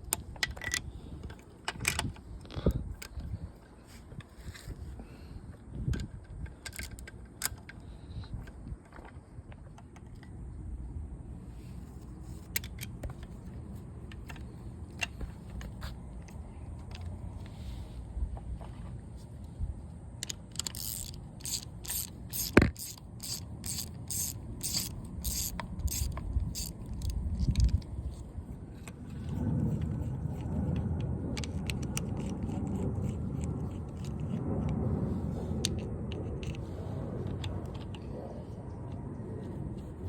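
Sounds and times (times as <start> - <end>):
ratchet wrench clicking: 20.2 - 27.8
metal tool clicks and scrapes: 20.2 - 28.2, 28.8 - 34.8.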